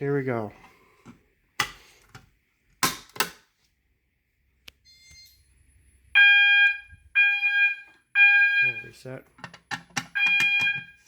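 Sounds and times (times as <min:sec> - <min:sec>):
faint beep: 0:04.8 - 0:05.8
fire alarm horn: 0:06.2 - 0:09.0, 0:10.2 - 0:11.0
fire alarm pull station clicks: 0:09.4 - 0:10.9.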